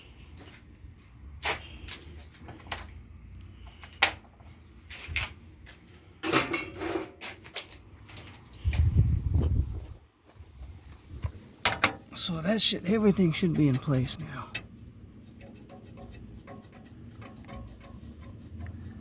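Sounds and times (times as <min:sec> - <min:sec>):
tools clicking and knocking: 0:06.2 - 0:07.8, 0:14.5 - 0:18.8.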